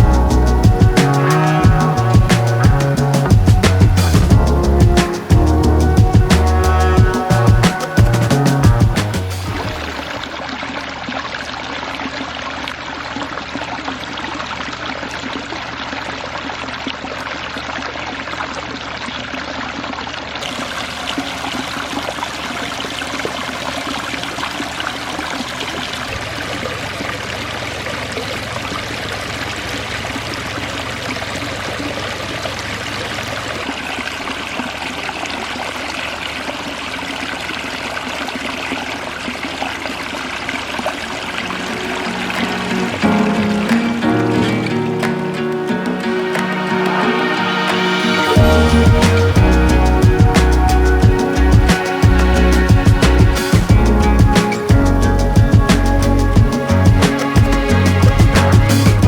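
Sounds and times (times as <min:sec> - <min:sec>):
water splashing over waterfall: 0:07.1 - 0:49.5.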